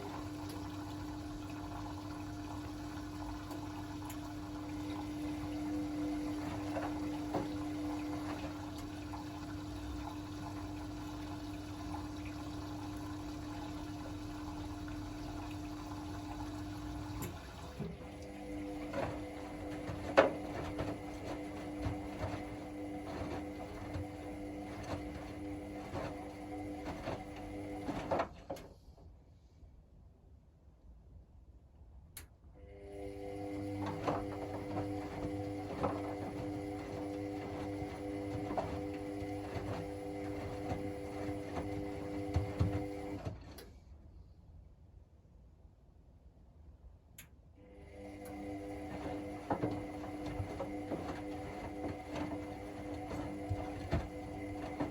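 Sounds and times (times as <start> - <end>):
washing machine water rushing: 0.0 - 28.7, 32.6 - 43.7, 47.6 - 54.9
washing machine knocking and sloshing: 0.0 - 28.8, 33.0 - 43.6, 47.9 - 54.9.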